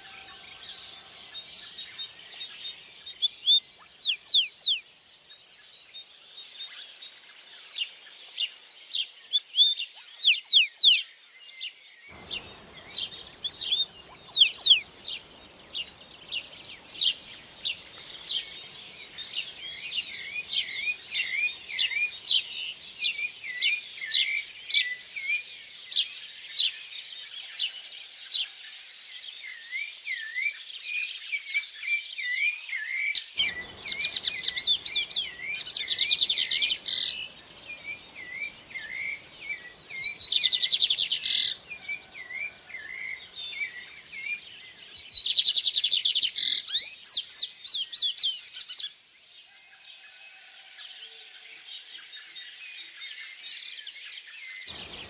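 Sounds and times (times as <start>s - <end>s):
birds singing and calling: 0.0s - 55.0s
faint low rushing: 12.1s - 22.9s
bright bird trills: 33.1s - 44.4s.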